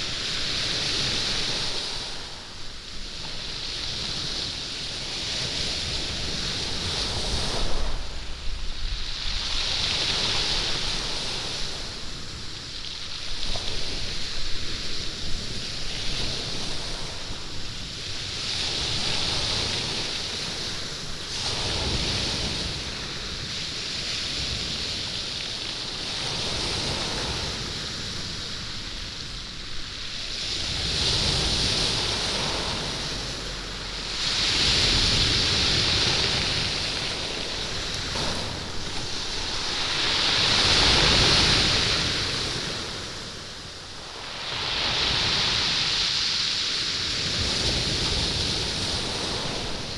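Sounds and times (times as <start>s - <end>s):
waves washing up pebble beach: 0.0s - 49.9s
stones rattling in surf: 31.2s - 46.0s.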